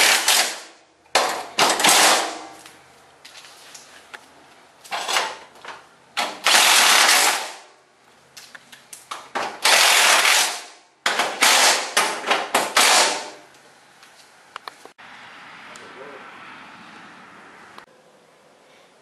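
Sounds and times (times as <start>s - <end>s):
impact driver hammering screws: 0.0s - 2.3s, 6.2s - 7.6s, 9.4s - 13.4s.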